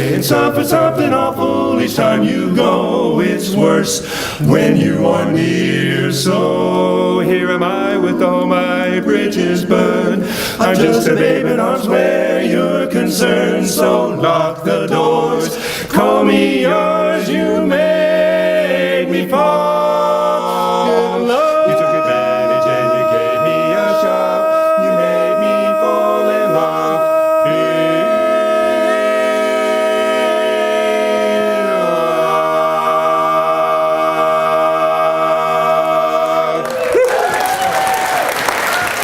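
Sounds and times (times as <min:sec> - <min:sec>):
quartet singing in close harmony: 0:00.0 - 0:37.6
applause: 0:36.6 - 0:39.0.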